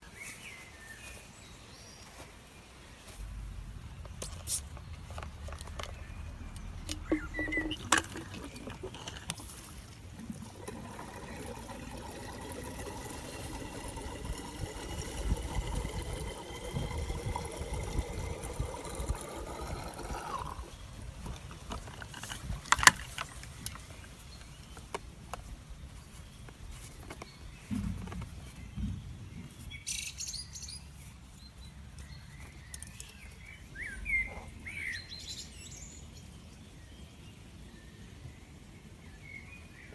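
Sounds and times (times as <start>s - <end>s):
fuel pouring into tank: 3.1s - 25.2s.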